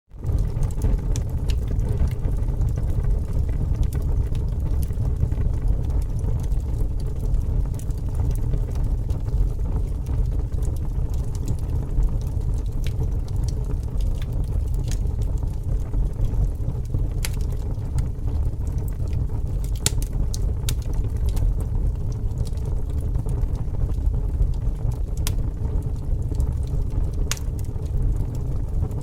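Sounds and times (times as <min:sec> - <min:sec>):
fire crackling and popping: 0:00.1 - 0:29.0
fire rushing: 0:00.1 - 0:29.0.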